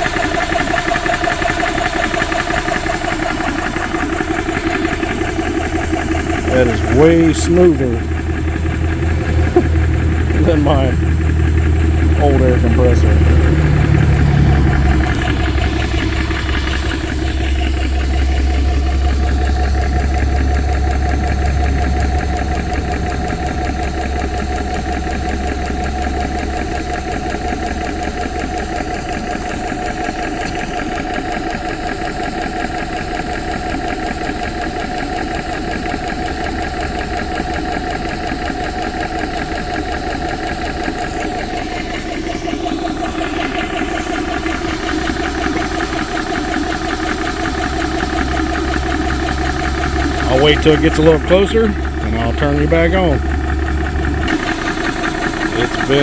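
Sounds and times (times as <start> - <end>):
air compressor running: 0.0 - 56.0
deep low hum: 4.4 - 29.1, 41.9 - 54.6.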